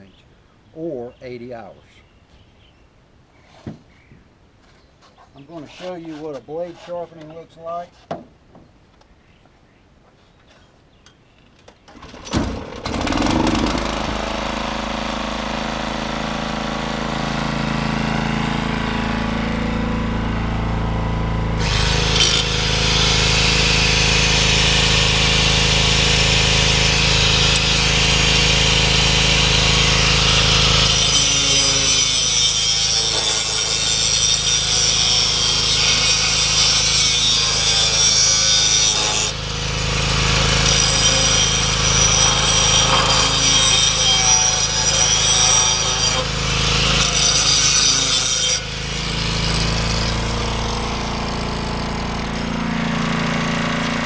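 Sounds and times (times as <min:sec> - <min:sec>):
electric grinder running: 0:12.4 - 0:54.0
grinder grinding steel: 0:12.8 - 0:54.0.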